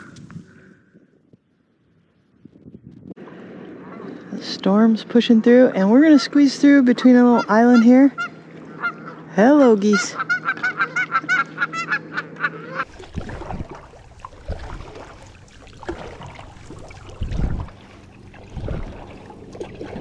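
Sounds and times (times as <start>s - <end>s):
geese honking: 7.1s - 12.9s.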